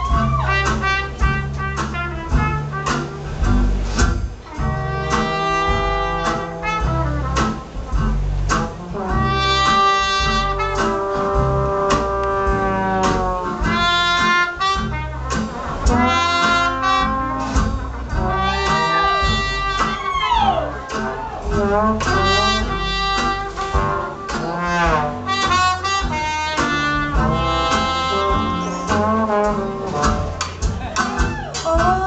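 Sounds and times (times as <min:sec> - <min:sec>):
jazz music with brass: 0:00.0 - 0:32.0.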